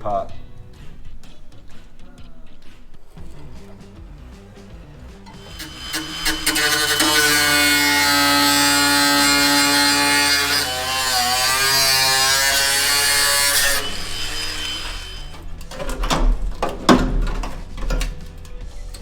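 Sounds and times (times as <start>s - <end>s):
power tool cutting metal: 5.3s - 15.8s.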